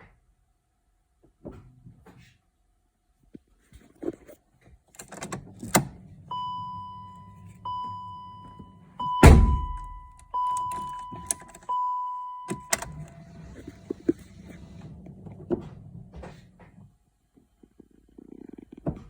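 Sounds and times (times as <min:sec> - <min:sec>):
car warning gong chiming: 0:06.3 - 0:13.6
heavy thunk: 0:09.2 - 0:10.2.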